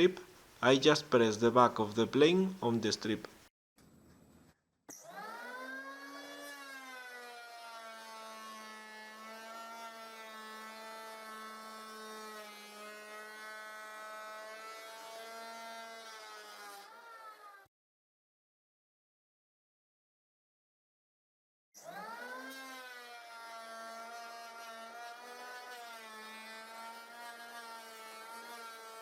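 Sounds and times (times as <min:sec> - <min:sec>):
electric planer whining: 0:05.2 - 0:17.6, 0:21.8 - 0:29.0.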